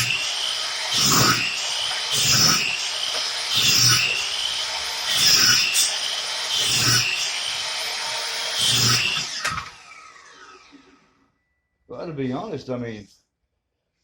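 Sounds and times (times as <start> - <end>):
miter saw cutting plywood: 0.0 - 11.1
saw motor whine: 0.0 - 11.4.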